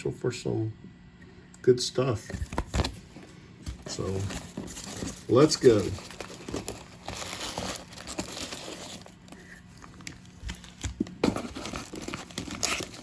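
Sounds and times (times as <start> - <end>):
plastic and foil wrapping crinkling: 3.8 - 13.0.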